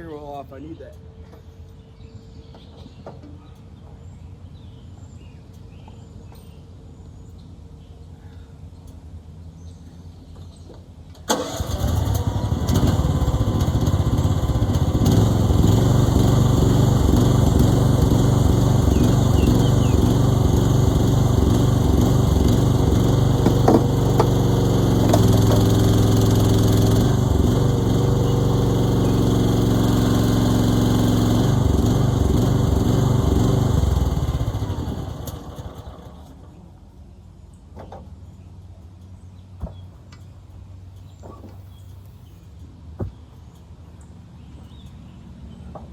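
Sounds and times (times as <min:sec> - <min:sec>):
engine running: 0:08.6 - 0:45.9.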